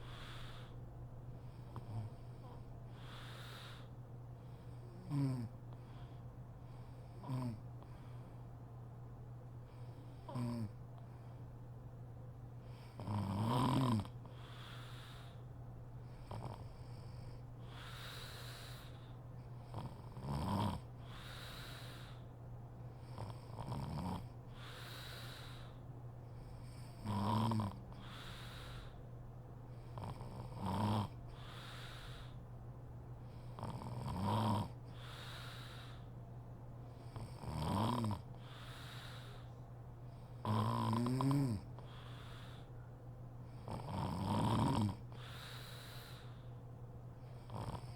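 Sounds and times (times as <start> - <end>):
steady low hum: 0.0 - 47.9
woman snoring: 5.0 - 5.5, 10.2 - 10.7, 12.9 - 14.8, 19.7 - 22.2, 23.1 - 25.7, 27.0 - 28.9, 30.0 - 32.4, 33.6 - 36.0, 37.1 - 39.4, 40.4 - 42.6, 43.6 - 46.3, 47.5 - 47.9.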